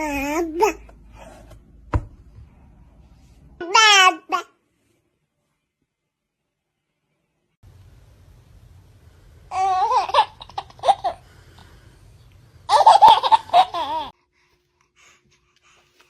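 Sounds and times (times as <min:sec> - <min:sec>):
baby giggling: 0:09.5 - 0:11.2, 0:12.7 - 0:14.1.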